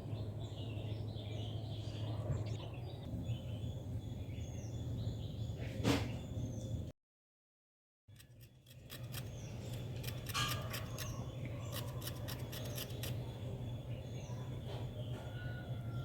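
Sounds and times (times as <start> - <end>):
sharp snipping clicks: 8.1 - 13.2.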